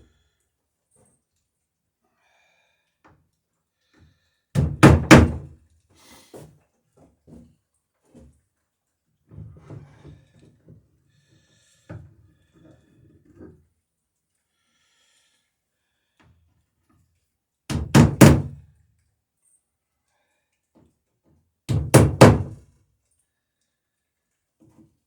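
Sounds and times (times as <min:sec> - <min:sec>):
hammer striking rivets on wood: 0:04.6 - 0:05.5, 0:17.7 - 0:18.6, 0:21.7 - 0:22.6.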